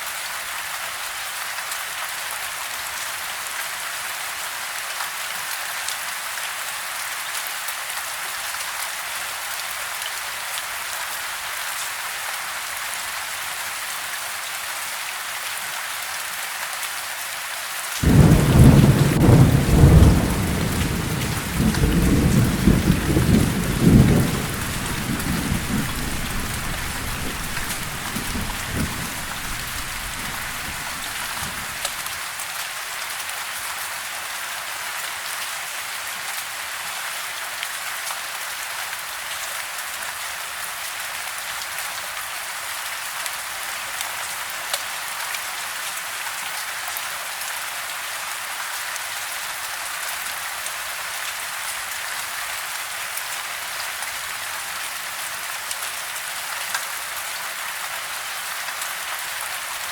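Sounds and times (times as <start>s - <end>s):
rain falling on a house: 0.0s - 59.9s
thunder rumble: 18.0s - 32.0s.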